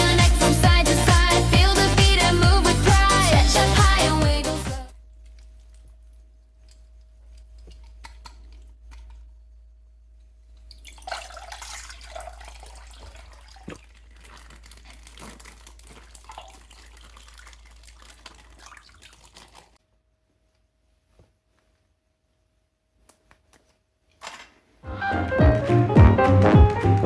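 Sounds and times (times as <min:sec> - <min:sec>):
water dripping: 0:04.9 - 0:09.4, 0:10.1 - 0:19.8
water pouring and splashing: 0:05.0 - 0:09.2, 0:10.6 - 0:19.8.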